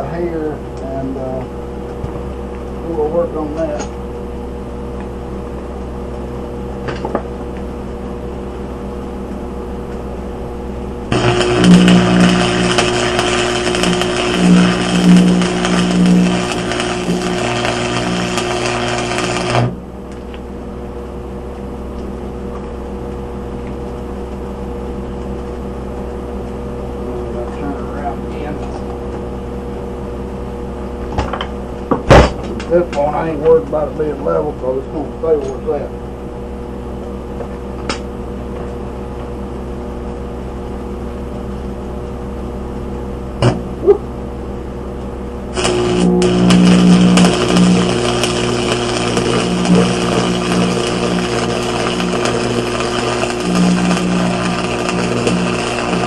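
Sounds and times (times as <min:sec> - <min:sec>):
steady lower hum: 0:00.0 - 0:56.0
welder transformer hum: 0:00.0 - 0:56.0
welding arc crackling and sizzling: 0:11.0 - 0:20.5, 0:45.5 - 0:56.0.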